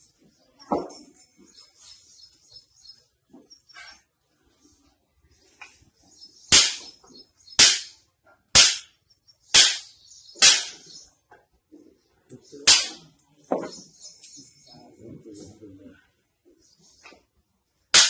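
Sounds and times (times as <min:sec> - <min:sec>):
hammer striking back: 0:06.5 - 0:06.9, 0:07.6 - 0:07.9, 0:08.6 - 0:08.9, 0:09.6 - 0:10.8, 0:12.7 - 0:13.0.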